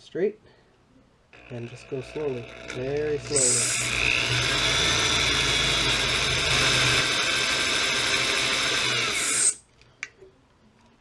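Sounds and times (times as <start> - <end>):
electric drill whining into metal: 1.4 - 9.6.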